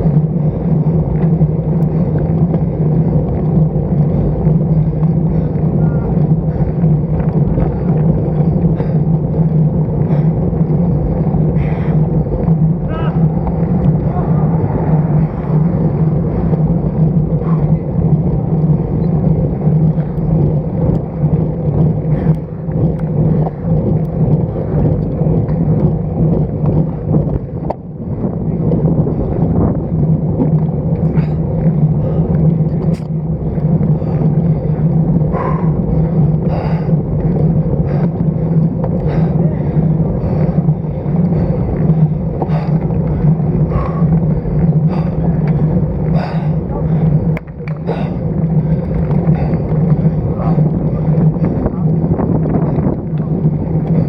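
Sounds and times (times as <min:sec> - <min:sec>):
constant low hum: 0:00.0 - 0:54.0
road rumble: 0:00.0 - 0:54.0
wind rush on microphone: 0:00.0 - 0:54.0.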